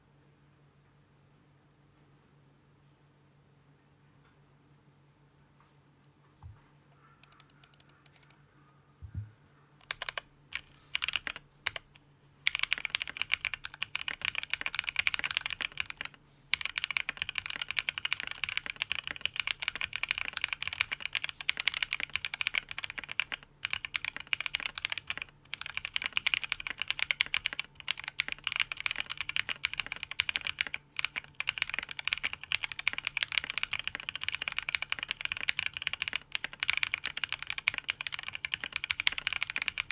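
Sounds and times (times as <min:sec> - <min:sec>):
mechanical keyboard typing: 0:07.2 - 0:08.4, 0:09.8 - 0:39.9.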